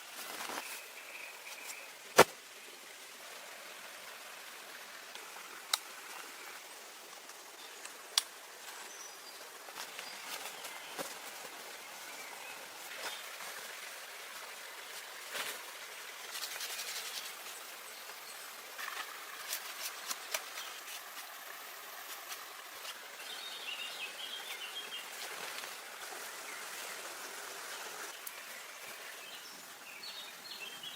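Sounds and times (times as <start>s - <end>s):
steady outdoor hiss: 0.0s - 30.9s
rustles and small clicks: 16.3s - 17.7s, 18.7s - 23.1s.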